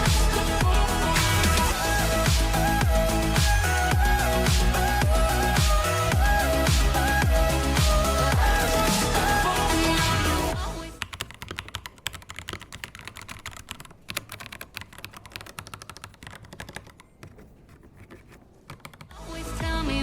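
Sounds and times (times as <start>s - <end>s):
background music: 0.0s - 11.2s, 19.1s - 20.0s
mechanical keyboard typing: 11.0s - 19.1s.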